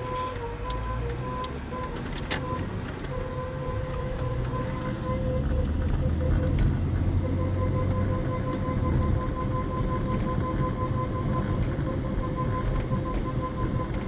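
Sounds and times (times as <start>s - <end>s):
brakes squealing tone: 0.0s - 14.0s
moving car rumble: 0.0s - 14.0s.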